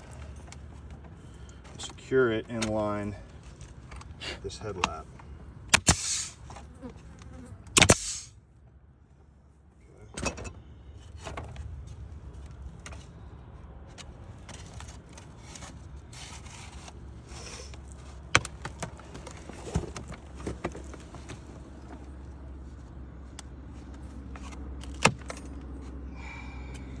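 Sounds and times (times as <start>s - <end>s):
pneumatic nailer shots: 5.7s - 6.5s, 7.7s - 8.4s.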